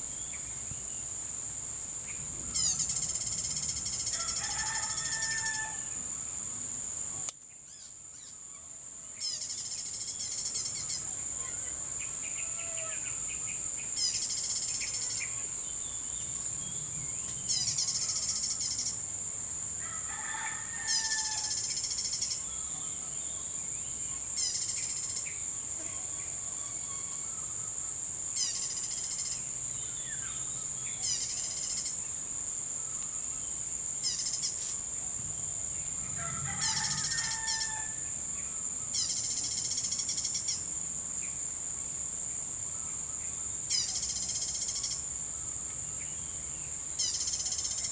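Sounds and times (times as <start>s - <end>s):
high insect drone: 0.0s - 47.9s
rooster crowing: 4.1s - 6.0s, 12.4s - 13.1s, 19.8s - 21.6s, 36.0s - 38.2s.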